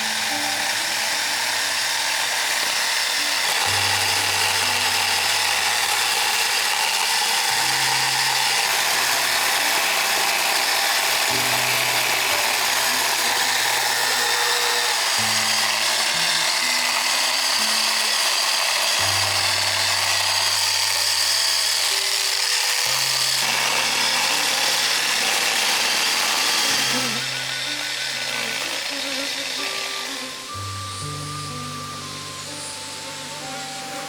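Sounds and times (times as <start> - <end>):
low held background music: 22.6 - 34.0
high-pitched buzzing hiss: 29.0 - 34.0.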